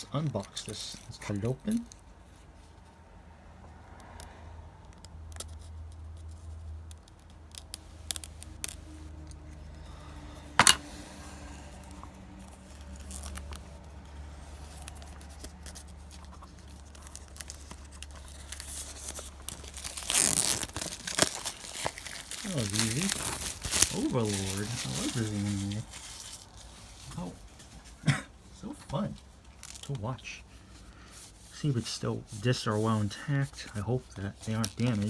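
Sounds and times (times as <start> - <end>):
low steady hum: 0.0 - 35.0
plastic rustling and tearing: 5.4 - 28.0, 28.6 - 35.0
packaging being cut and torn: 14.6 - 26.5.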